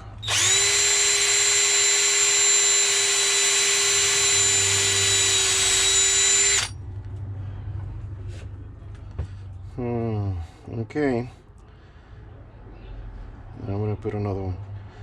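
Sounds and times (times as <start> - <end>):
electric drill boring into wood: 0.0 - 6.8.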